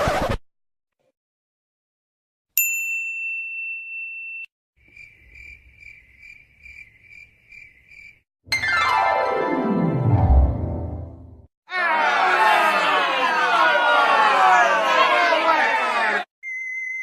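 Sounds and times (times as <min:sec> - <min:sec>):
cricket chirps: 0:04.8 - 0:08.2.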